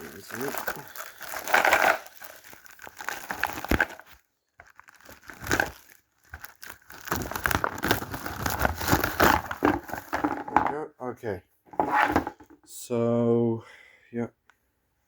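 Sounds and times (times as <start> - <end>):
packaging rustling and crinkling: 0.0 - 10.7.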